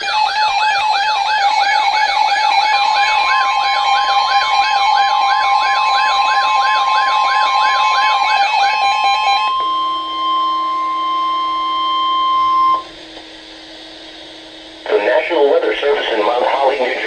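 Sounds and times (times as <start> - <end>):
warbling siren-like alarm: 0.0 - 13.0
lower steady tone: 0.0 - 17.0
steady high warning tone: 0.0 - 17.0.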